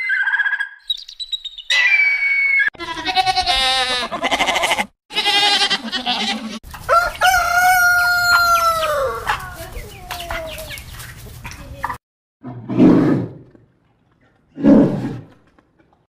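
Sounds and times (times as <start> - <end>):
rooster crowing: 6.9 - 9.4.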